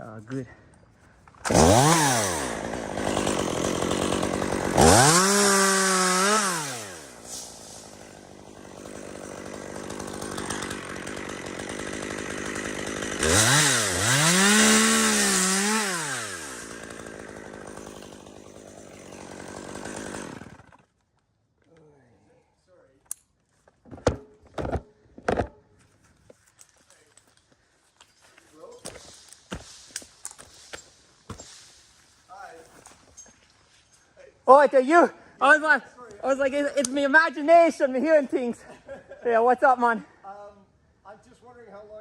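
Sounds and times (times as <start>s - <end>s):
chainsaw revving: 1.4s - 20.9s.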